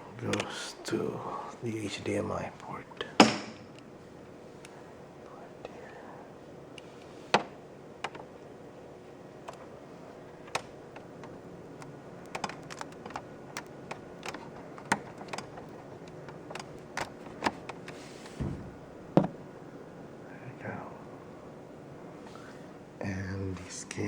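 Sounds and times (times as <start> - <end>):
plastic clicks and light knocks: 7.4 - 8.3, 10.4 - 19.4
dull thump: 18.3 - 19.4.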